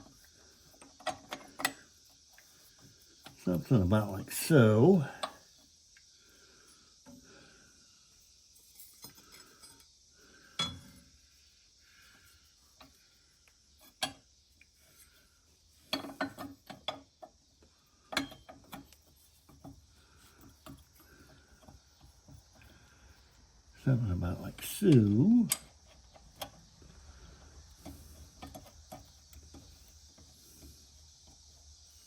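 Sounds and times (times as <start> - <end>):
small metal parts clinking: 8.5 - 9.9.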